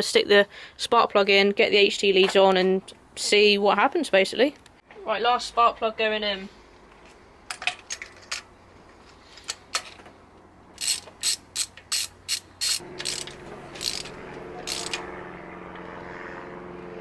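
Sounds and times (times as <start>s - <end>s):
ratchet wrench clicking: 10.8s - 15.0s
low drone: 12.8s - 17.0s.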